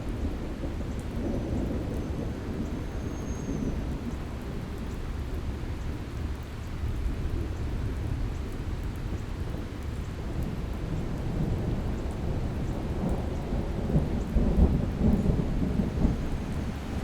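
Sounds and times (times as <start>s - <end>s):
rushing water rumbling: 11.3s - 17.0s.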